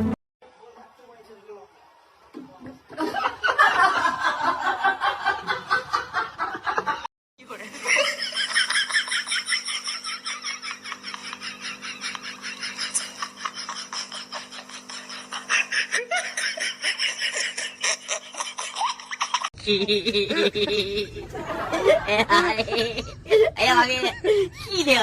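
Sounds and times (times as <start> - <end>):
high-pitched laughter: 7.8 - 24.1.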